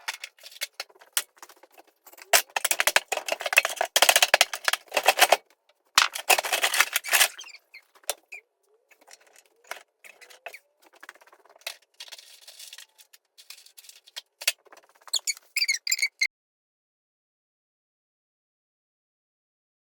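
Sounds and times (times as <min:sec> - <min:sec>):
short squeaks: 0:06.8 - 0:10.8, 0:15.0 - 0:16.3.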